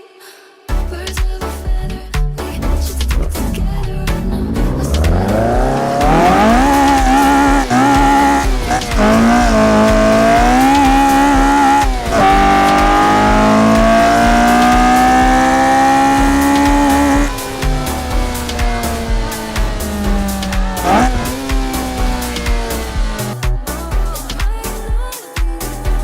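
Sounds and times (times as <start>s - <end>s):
car engine at high revs: 3.1s - 23.4s
tyres squealing: 5.1s - 23.4s.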